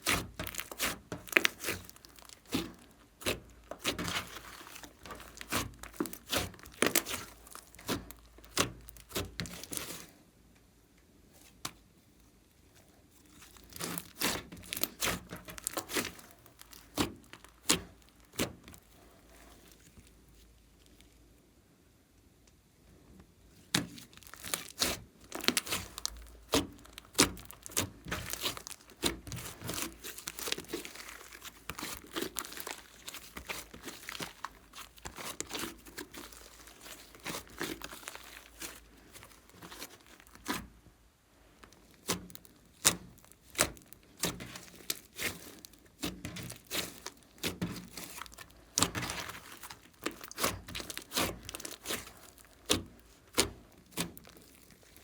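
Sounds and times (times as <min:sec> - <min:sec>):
sticky crackles and popping: 0:00.0 - 0:10.2, 0:12.7 - 0:21.4, 0:23.5 - 0:55.0
slime squeezed by hand: 0:23.7 - 0:40.7, 0:41.6 - 0:55.0.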